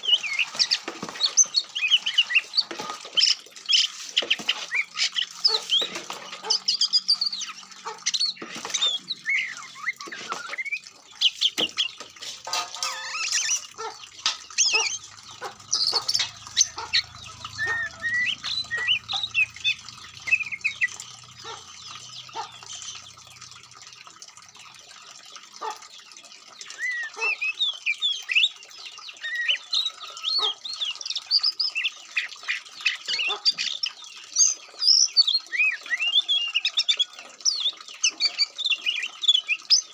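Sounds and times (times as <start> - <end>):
bird singing chirps and whistles: 8.1 - 11.9, 17.4 - 21.0, 26.7 - 28.6, 29.2 - 39.9.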